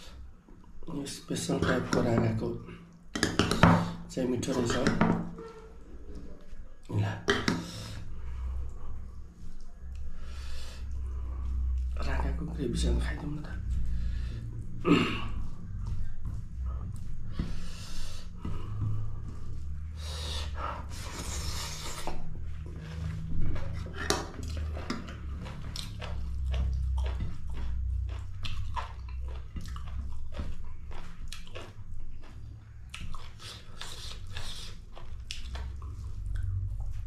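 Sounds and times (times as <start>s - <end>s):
person chewing wetly: 6.1s - 37.0s
low steady rumble: 7.8s - 37.0s.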